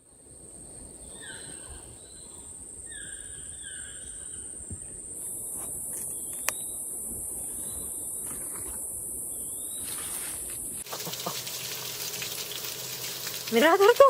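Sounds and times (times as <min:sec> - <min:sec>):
high insect hiss: 0:00.2 - 0:14.0
insects buzzing: 0:02.6 - 0:14.0.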